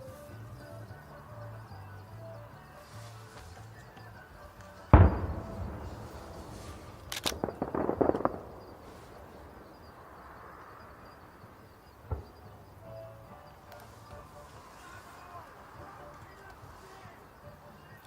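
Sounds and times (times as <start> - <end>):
firework crackles: 2.8 - 18.0
firework boom: 4.9 - 12.8
sharp snap: 5.0 - 9.6.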